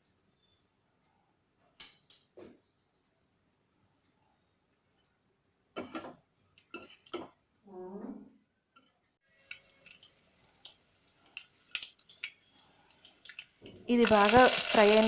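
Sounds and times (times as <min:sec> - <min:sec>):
oil sizzling with pops: 0:09.2 - 0:15.0.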